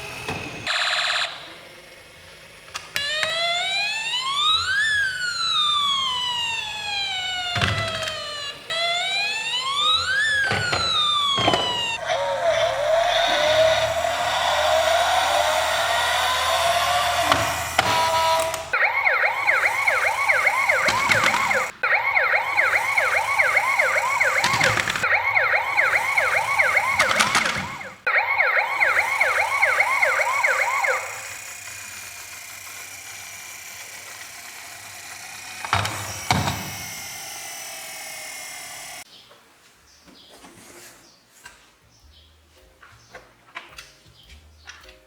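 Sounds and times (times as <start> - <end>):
siren yelping: 0.0 - 1.6, 3.0 - 32.1, 32.7 - 39.1
slowly falling tone: 3.1 - 31.6.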